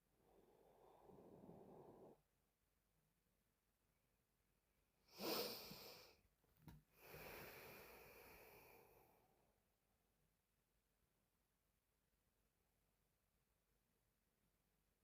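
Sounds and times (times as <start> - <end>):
faint breath: 0.0 - 2.2, 5.1 - 6.2, 6.9 - 9.4
woman snoring: 0.3 - 2.2.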